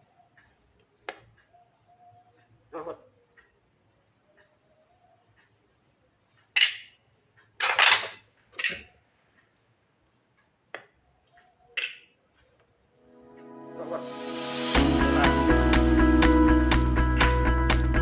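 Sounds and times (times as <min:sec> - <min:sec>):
music: 0:13.0 - 0:18.0.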